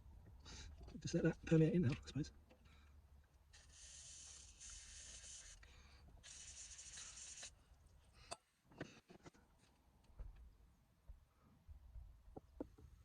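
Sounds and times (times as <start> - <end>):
aerosol spray hissing: 3.6 - 5.6, 6.2 - 7.6.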